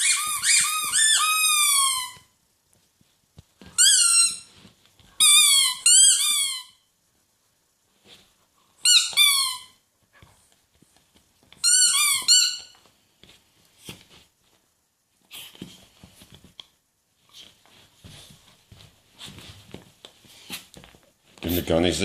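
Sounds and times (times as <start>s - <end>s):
squeaky toy squeaking: 0.0s - 2.3s, 3.8s - 4.5s, 5.2s - 6.8s, 8.8s - 9.8s, 11.6s - 12.8s.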